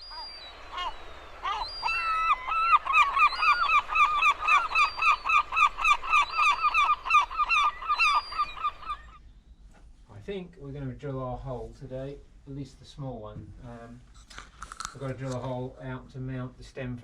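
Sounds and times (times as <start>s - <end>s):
large bird honking calls: 0.0s - 9.2s.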